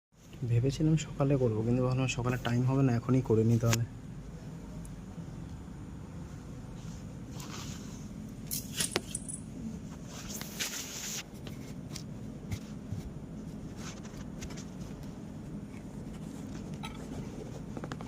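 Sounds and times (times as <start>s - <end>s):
steady low hum: 0.2s - 18.0s
small metal parts clinking: 8.5s - 9.5s.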